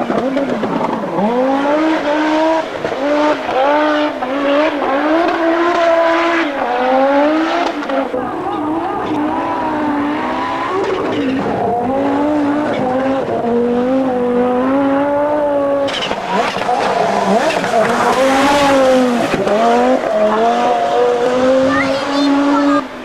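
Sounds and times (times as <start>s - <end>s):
car engine revving hard: 0.0s - 23.0s
rushing noise: 8.2s - 15.9s.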